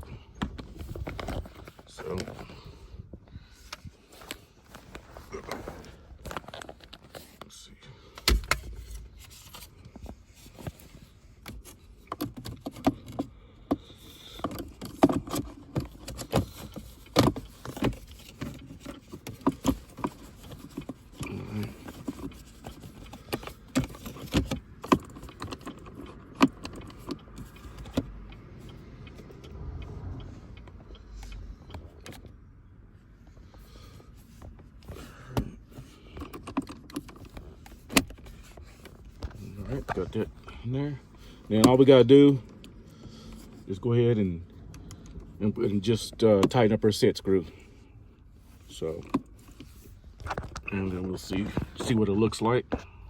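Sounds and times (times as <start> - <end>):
hand work clicks and rattles: 11.4 - 28.1.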